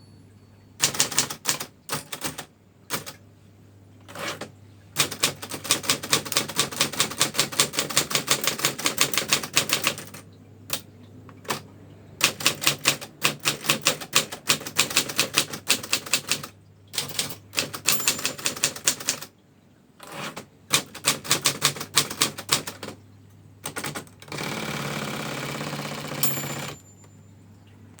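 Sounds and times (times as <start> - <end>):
high ringing tone: 0.0 - 0.8, 26.2 - 27.8
typewriter keystrokes: 0.8 - 3.2, 4.0 - 19.3, 20.0 - 23.0, 23.6 - 26.9.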